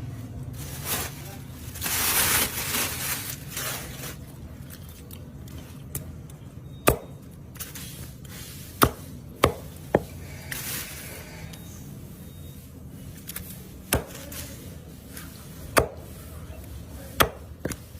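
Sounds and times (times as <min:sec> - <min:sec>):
knife chopping on cutting board: 0:13.9 - 0:14.2, 0:15.7 - 0:16.1, 0:17.2 - 0:17.9.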